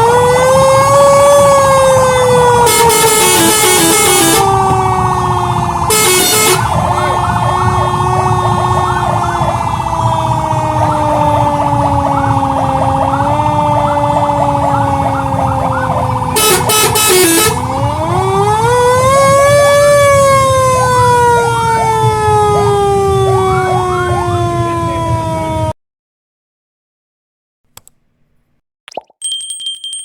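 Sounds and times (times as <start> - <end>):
fire truck siren wailing: 0.0 - 25.8
harsh horn blast: 2.4 - 9.4, 16.3 - 17.8.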